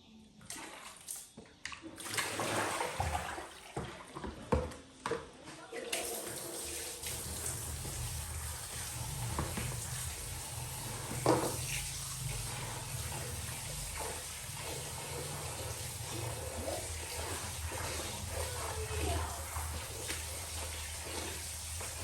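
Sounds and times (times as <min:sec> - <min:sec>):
tap water running into sink: 0:05.8 - 0:22.0.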